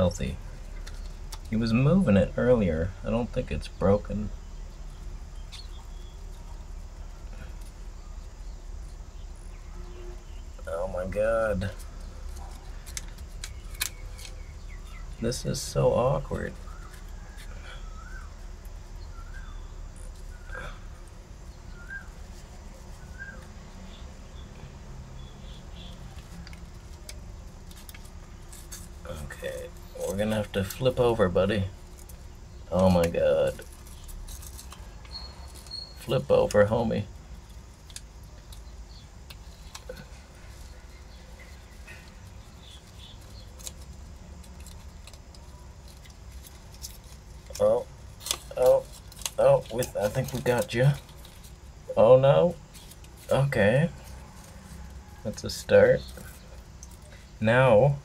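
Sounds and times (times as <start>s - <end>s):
small bird chirping: 0.0s - 58.0s
soft rustles: 11.2s - 24.5s, 25.3s - 51.9s, 52.6s - 57.5s.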